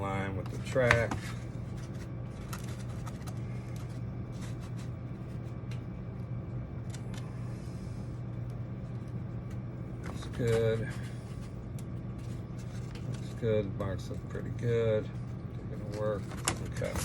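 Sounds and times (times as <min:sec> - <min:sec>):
low background hum: 0:00.0 - 0:17.0.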